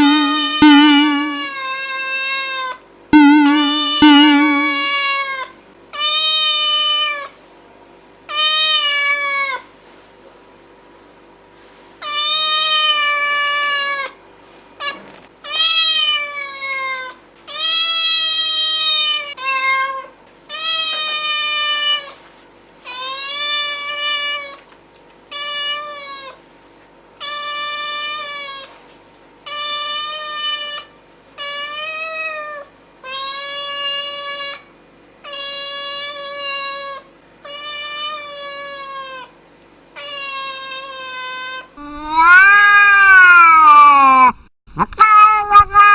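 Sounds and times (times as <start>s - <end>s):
cat meowing: 0.0s - 5.4s, 40.0s - 45.9s.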